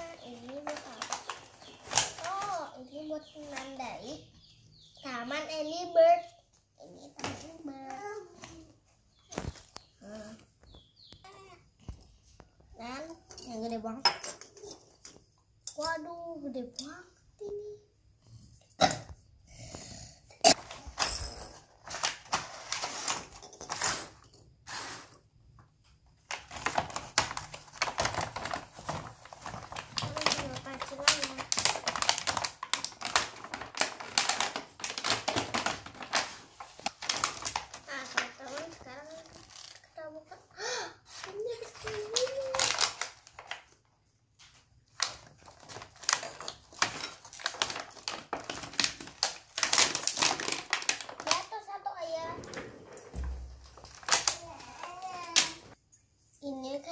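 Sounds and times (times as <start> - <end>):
packaging crinkling: 0.0 - 2.6, 20.5 - 24.1, 26.3 - 39.9, 41.1 - 43.8, 44.9 - 51.7, 52.4 - 55.7
rustling: 26.3 - 40.0.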